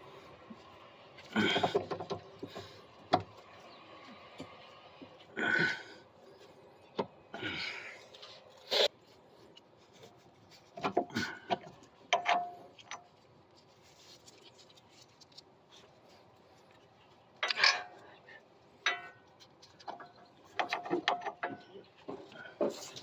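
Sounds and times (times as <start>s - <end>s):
metal parts scraping: 17.4s - 18.0s.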